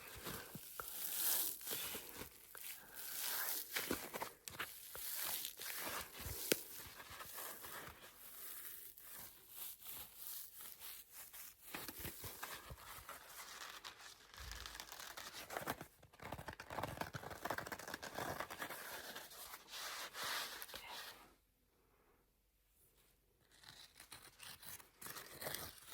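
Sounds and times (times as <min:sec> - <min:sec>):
scratching on sponge: 0:00.0 - 0:14.0.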